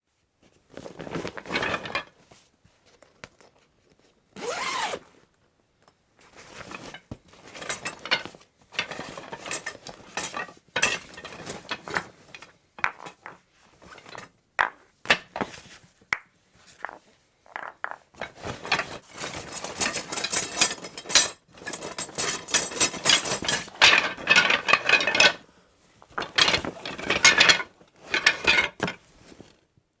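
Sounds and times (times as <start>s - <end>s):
hard objects knocking and clinking: 16.8s - 25.4s.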